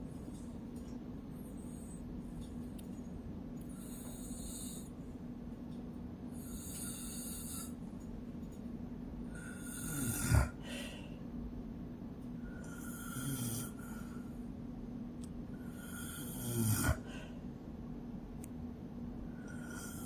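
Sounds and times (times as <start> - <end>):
woman snoring: 3.7 - 4.9, 6.4 - 7.8, 9.3 - 11.0, 12.5 - 14.2, 15.6 - 17.4, 19.4 - 20.0
loud deep snort: 9.4 - 10.7, 12.8 - 13.8, 15.7 - 17.3.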